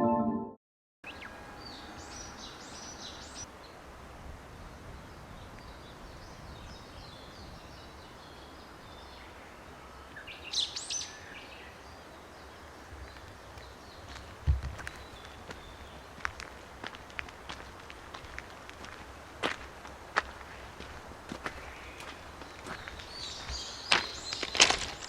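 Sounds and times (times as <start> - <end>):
outdoor background noise: 1.0 - 25.0
birds chirping: 21.5 - 25.0.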